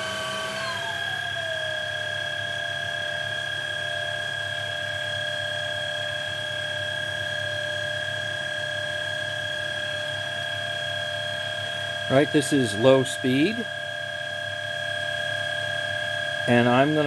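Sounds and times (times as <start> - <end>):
stick vacuum motor whining: 0.0 - 1.9.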